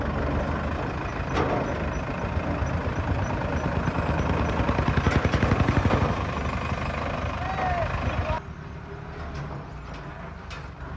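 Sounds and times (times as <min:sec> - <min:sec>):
diesel engine running: 0:00.0 - 0:08.4.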